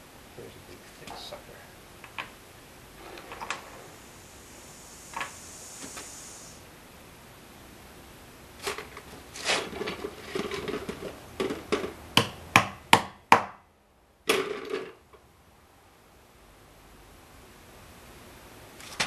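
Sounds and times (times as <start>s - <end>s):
wheel weights and tools clattering: 3.0s - 3.9s, 8.6s - 12.0s.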